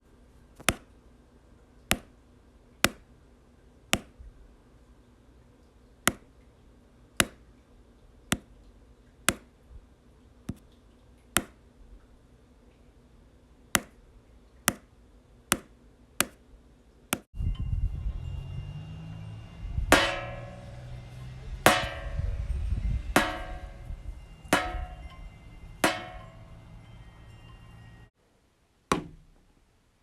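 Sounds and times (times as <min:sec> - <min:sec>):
sharp tap sound effects: 0:01.9 - 0:02.1, 0:06.1 - 0:06.3, 0:07.2 - 0:07.4, 0:13.8 - 0:14.0, 0:15.5 - 0:16.4
loud low steady tone: 0:17.4 - 0:27.6.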